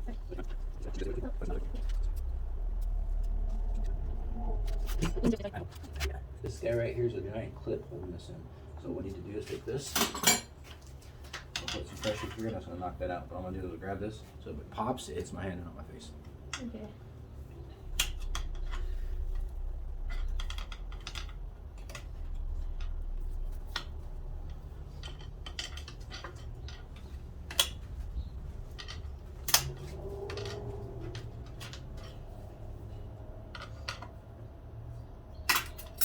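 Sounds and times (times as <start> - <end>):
low steady rumble: 0.0 - 8.4, 15.6 - 36.0
metallic clicks of hand tools: 28.8 - 32.2.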